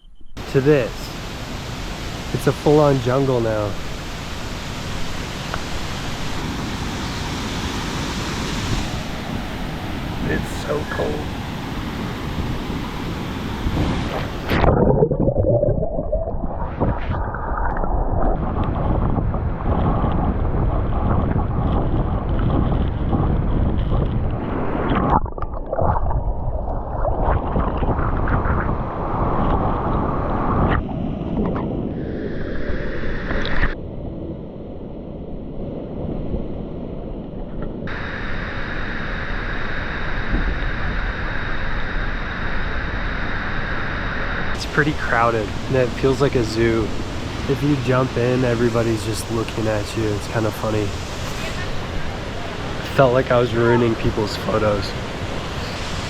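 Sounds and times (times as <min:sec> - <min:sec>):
wind noise on microphone: 0:00.0 - 0:56.0
waterfall rushing: 0:00.4 - 0:14.8, 0:44.6 - 0:56.0
underwater rumble and gurgle: 0:10.9 - 0:38.5.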